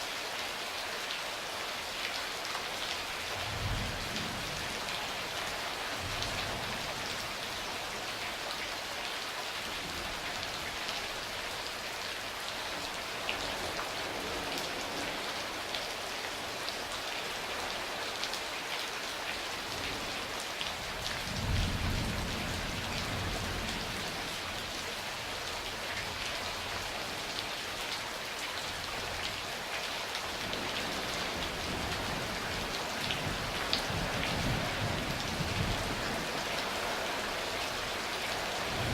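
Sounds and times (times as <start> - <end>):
rain pattering: 0.0 - 38.9.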